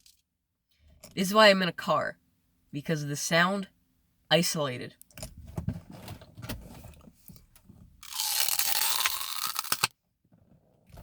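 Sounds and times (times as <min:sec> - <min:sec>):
loud crunch: 0:08.0 - 0:09.9
teeth biting plastic bottle: 0:08.0 - 0:09.9.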